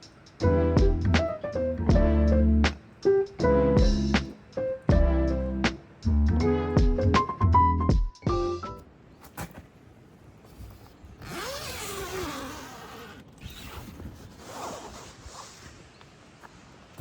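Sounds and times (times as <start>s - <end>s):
zipper being pulled: 10.5s - 15.9s.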